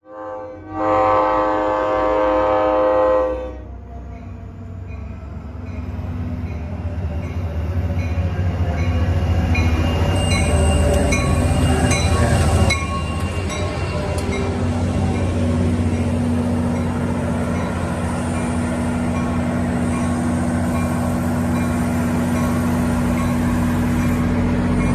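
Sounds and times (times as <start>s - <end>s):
train horn blast: 0.0s - 3.8s
train rumbling: 0.6s - 24.9s.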